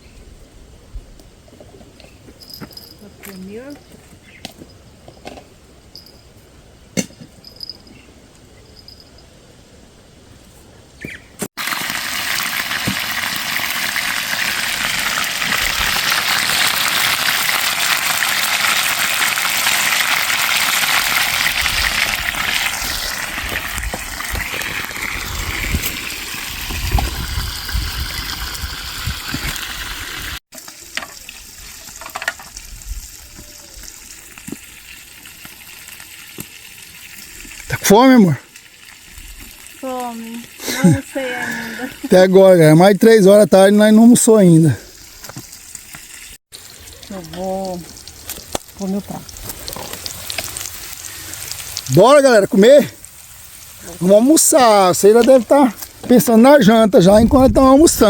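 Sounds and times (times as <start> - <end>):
running water rushing: 11.6 - 31.8.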